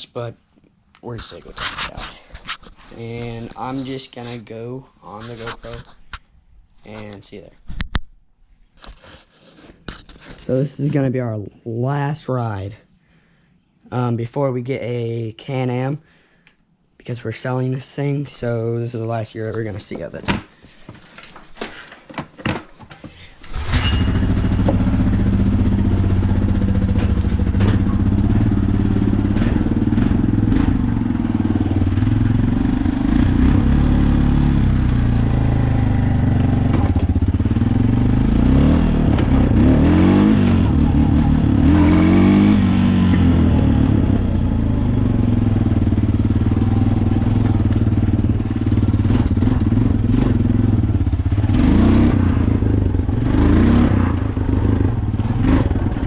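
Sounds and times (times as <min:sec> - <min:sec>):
atv engine running: 0:23.5 - 0:56.0.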